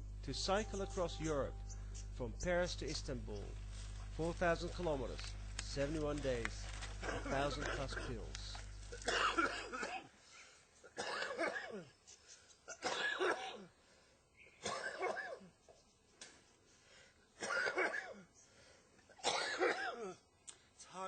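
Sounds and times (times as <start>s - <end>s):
man coughing: 7.0s - 10.1s, 10.8s - 11.9s, 12.7s - 13.7s, 14.6s - 15.5s, 17.4s - 18.3s, 19.1s - 20.2s.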